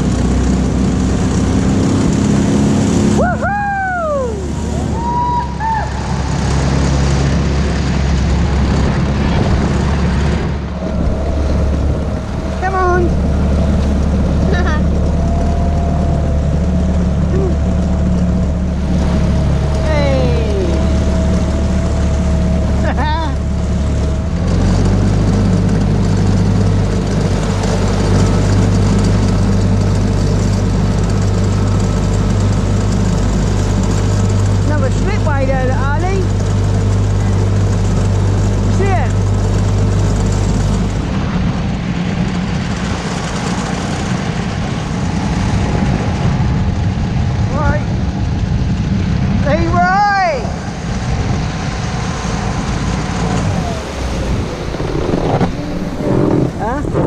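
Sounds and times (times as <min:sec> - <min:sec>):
outboard motor running: 0:00.0 - 0:57.0
faint whistle: 0:04.9 - 0:05.9
water against hull: 0:50.7 - 0:57.0.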